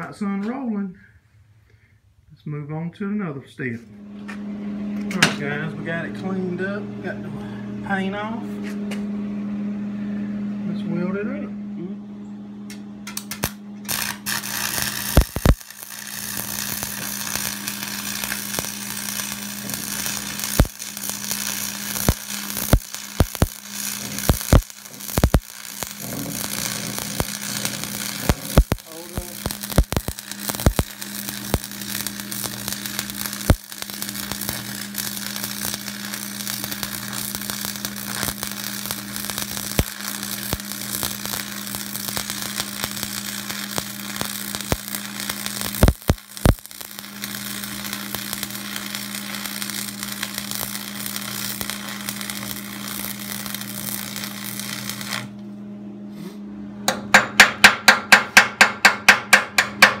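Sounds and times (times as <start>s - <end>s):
low electrical hum: 0.0s - 60.0s
welding arc crackling: 13.1s - 55.4s
sharp pops: 13.2s - 46.7s.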